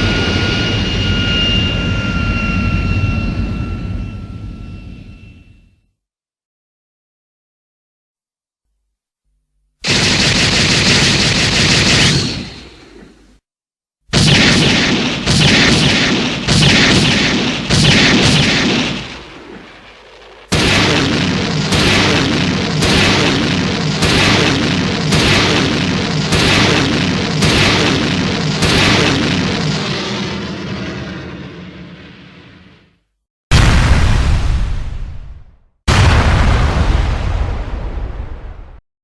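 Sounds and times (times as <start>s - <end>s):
heavy cannon-like blasts: 14.1s - 32.8s, 33.5s - 38.8s.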